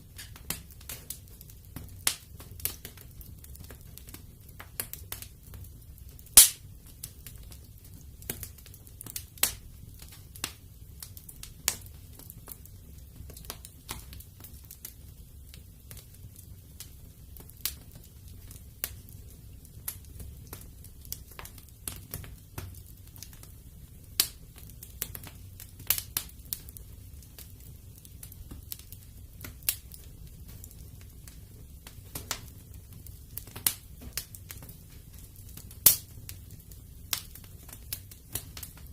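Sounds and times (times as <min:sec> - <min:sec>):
wood fire crackling: 0:00.0 - 0:38.9
sharp fire pops: 0:00.1 - 0:07.6, 0:24.1 - 0:38.9.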